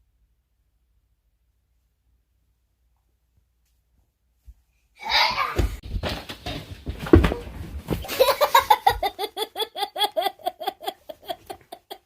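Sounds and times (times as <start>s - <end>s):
dull thumps: 5.6s - 9.3s
person laughing: 8.0s - 12.0s.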